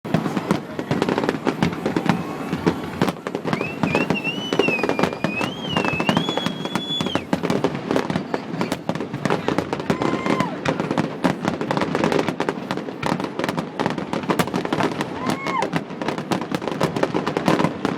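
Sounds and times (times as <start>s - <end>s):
fireworks crackling and popping: 0.1s - 17.9s
high wavering whistle: 3.5s - 7.3s.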